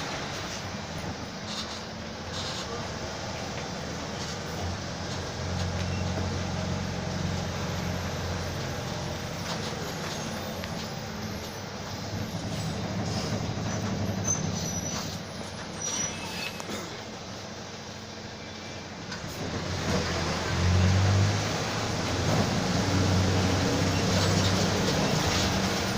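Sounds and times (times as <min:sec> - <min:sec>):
bus engine droning: 0:00.0 - 0:25.9.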